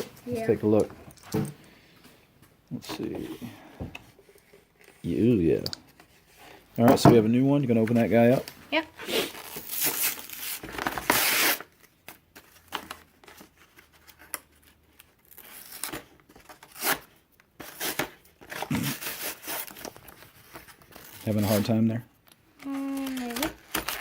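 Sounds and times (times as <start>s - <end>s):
packaging tearing and crinkling: 9.2s - 11.9s, 12.6s - 20.1s, 22.6s - 24.0s.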